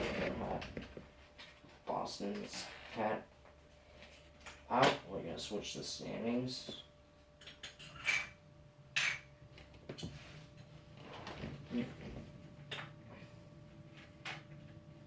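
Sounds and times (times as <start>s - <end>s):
plastic helmets clicking and scraping: 0.0s - 1.8s.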